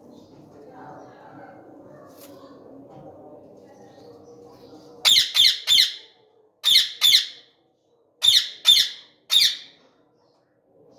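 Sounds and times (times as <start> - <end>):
parakeet harsh calls: 5.1 - 7.4, 8.2 - 9.7.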